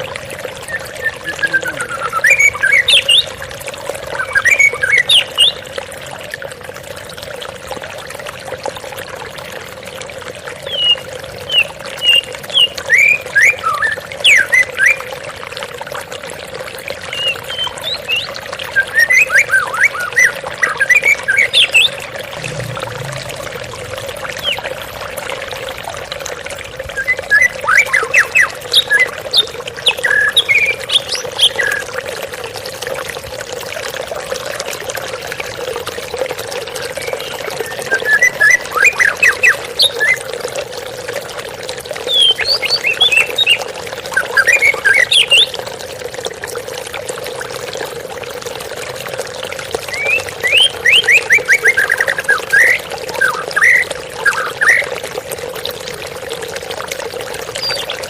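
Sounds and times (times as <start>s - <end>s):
running water rushing: 0.0s - 58.0s
bird singing whistled phrases: 0.6s - 3.2s.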